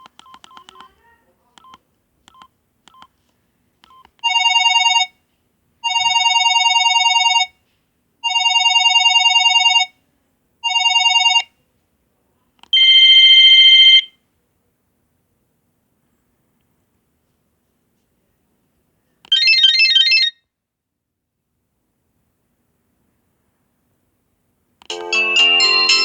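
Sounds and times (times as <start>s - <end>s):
higher phone ringtone: 4.2s - 5.1s, 5.8s - 7.5s, 8.2s - 9.9s, 10.7s - 11.5s, 24.9s - 26.0s
phone ringtone trill: 24.9s - 26.0s.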